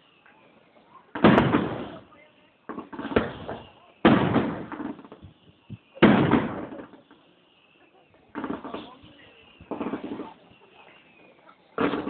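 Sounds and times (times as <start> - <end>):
fireworks bursting: 0.0 - 12.0.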